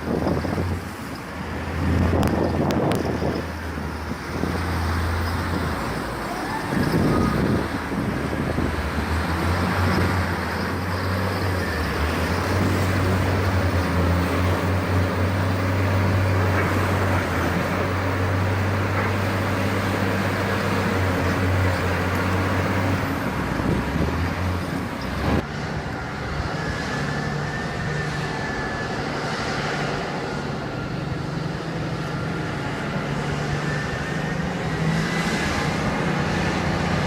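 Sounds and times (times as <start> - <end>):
large machine engine droning: 0.0 - 37.0.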